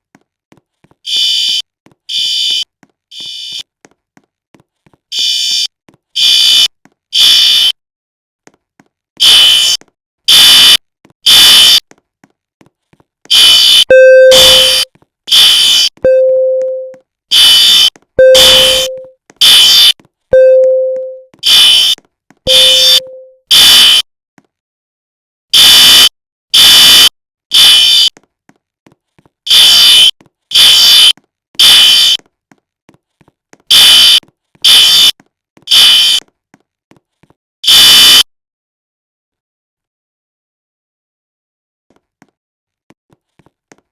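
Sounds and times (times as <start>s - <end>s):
fire alarm horn blasts: 13.4s - 24.0s, 25.6s - 28.1s, 33.8s - 35.1s, 37.6s - 38.3s.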